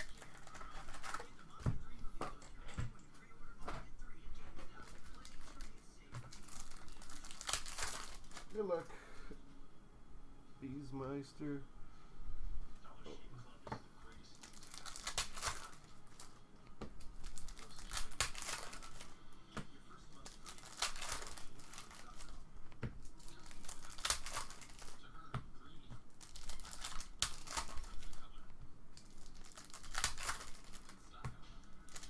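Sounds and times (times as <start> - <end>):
wrappers tearing and crinkling: 0.0 - 1.6, 4.7 - 8.7, 14.3 - 16.4, 17.0 - 19.2, 20.2 - 22.4, 23.0 - 25.1, 26.1 - 28.4, 29.0 - 31.1, 31.7 - 32.0.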